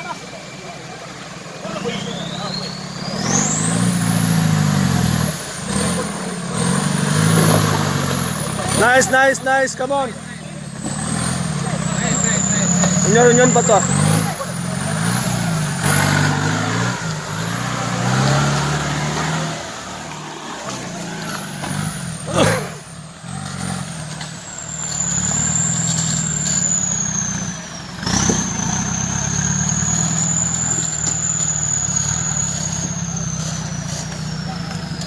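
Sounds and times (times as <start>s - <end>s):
off-road vehicle engine revving: 0.0s - 35.0s.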